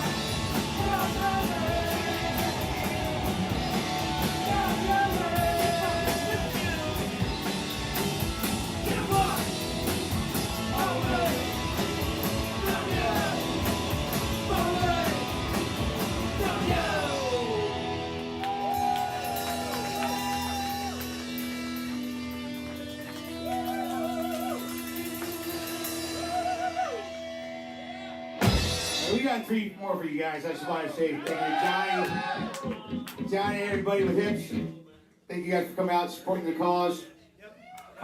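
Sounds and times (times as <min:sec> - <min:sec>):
rock band playing: 0:00.0 - 0:29.5
drums: 0:00.0 - 0:30.1, 0:31.3 - 0:35.8
sliding electric guitar lead: 0:19.3 - 0:29.1.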